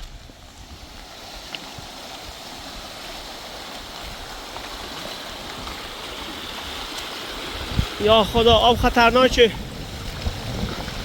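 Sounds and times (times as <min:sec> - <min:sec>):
rushing water: 0:00.0 - 0:11.0.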